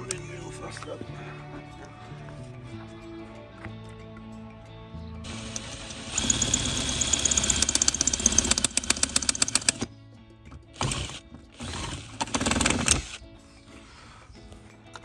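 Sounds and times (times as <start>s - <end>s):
power drill drilling screw: 5.3s - 9.9s, 10.8s - 13.2s
rapid clicking: 5.3s - 9.9s, 10.8s - 13.2s.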